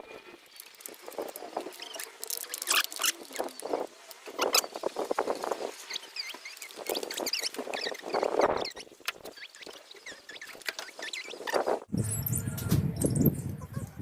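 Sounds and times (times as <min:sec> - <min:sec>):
soil rustling and scraping: 0:00.1 - 0:11.9
short squeaks: 0:00.5 - 0:04.8, 0:05.4 - 0:14.0.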